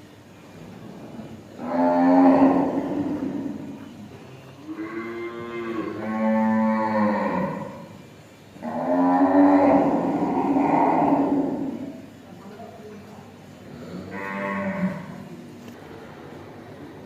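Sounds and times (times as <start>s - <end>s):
cows mooing: 0.6s - 8.0s, 8.6s - 12.1s, 13.7s - 15.3s.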